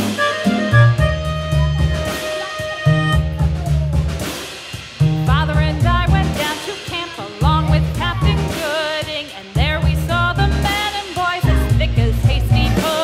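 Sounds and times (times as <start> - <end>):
wavering lead melody: 0.0 - 4.3
music with bass and drums: 0.0 - 13.0.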